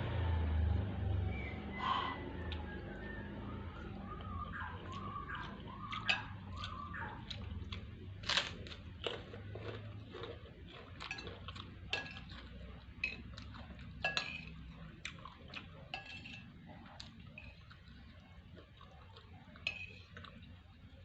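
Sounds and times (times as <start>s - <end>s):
cutlery clinking on a plate: 5.9s - 6.6s, 10.9s - 14.7s, 15.9s - 17.6s, 19.6s - 20.3s.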